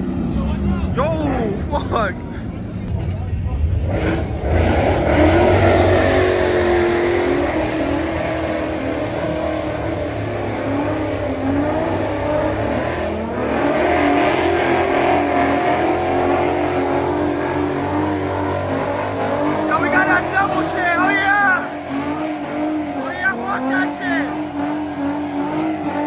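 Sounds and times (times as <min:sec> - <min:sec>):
car engine revving hard: 0:00.0 - 0:26.0.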